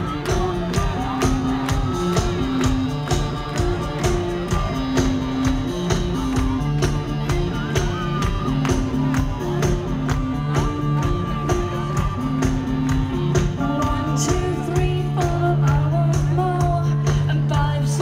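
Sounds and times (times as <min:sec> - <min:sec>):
driving drum beat: 0:00.0 - 0:18.0
rock band playing: 0:00.0 - 0:18.0.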